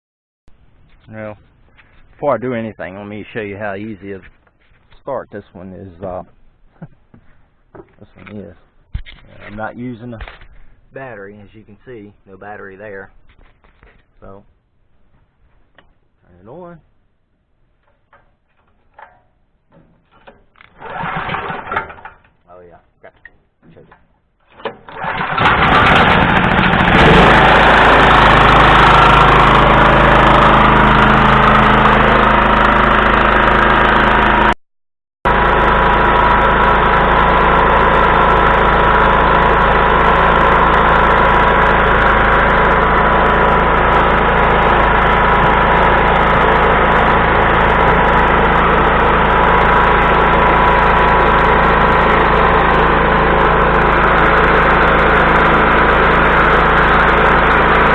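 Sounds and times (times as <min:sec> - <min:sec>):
generator engine starting and running: 0:20.0 - 0:22.4, 0:23.8 - 0:34.6, 0:35.3 - 0:57.9.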